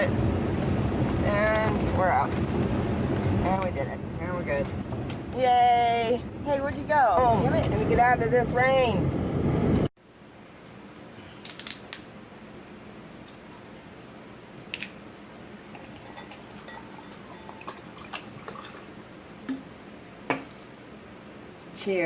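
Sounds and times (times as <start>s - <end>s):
glassware clinking: 16.0s - 17.9s.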